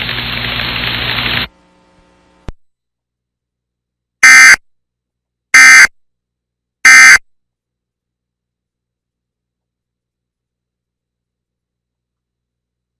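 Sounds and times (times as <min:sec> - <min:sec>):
radio hiss: 0:00.0 - 0:01.6.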